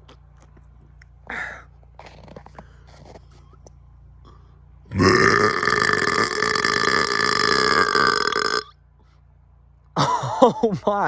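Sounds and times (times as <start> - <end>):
man burping: 4.3 - 8.7.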